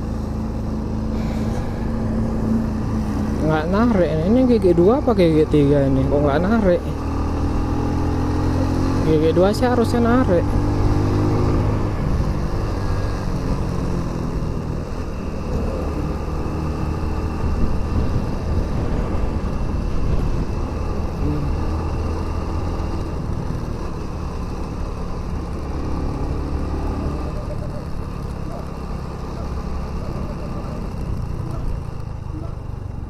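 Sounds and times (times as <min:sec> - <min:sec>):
motorcycle engine running: 0:00.0 - 0:33.0
wind noise on microphone: 0:17.2 - 0:21.2.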